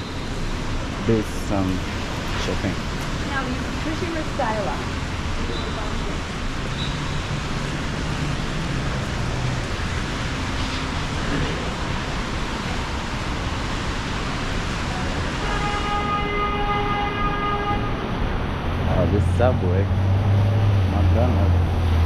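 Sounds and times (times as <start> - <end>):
street traffic: 0.0 - 22.0
steady rain: 0.1 - 17.2.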